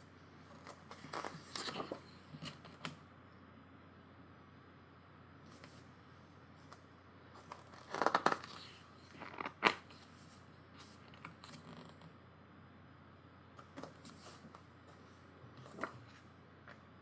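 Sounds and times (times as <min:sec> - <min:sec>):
paper pages rustling: 0:00.5 - 0:02.0, 0:07.4 - 0:11.6, 0:15.6 - 0:16.8
page flapping: 0:00.6 - 0:02.0, 0:07.4 - 0:10.0, 0:15.6 - 0:16.2.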